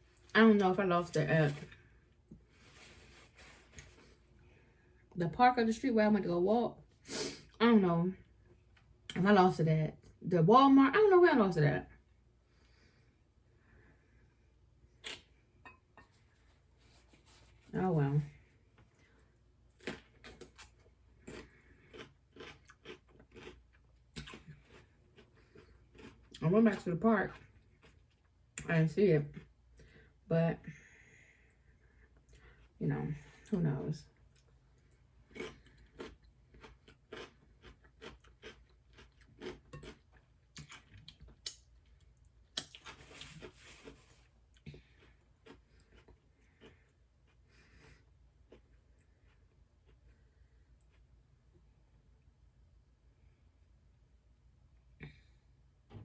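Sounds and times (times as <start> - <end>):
person chewing crunchy food: 19.7 - 26.4, 34.3 - 51.1.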